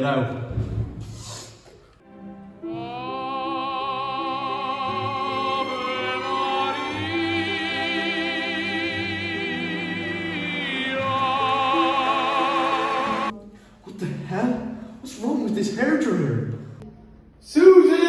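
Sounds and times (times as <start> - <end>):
orchestral accompaniment: 2.0 - 13.4
operatic singing: 2.1 - 13.4.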